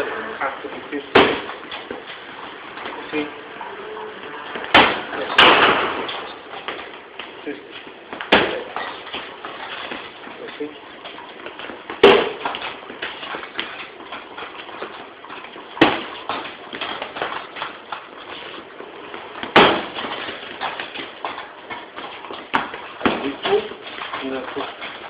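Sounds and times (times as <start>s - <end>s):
feet shuffling: 0.0s - 25.0s
punches smacking training pad: 1.1s - 1.5s, 4.6s - 6.8s, 8.2s - 9.3s, 11.9s - 12.6s, 15.8s - 17.3s, 19.4s - 21.0s.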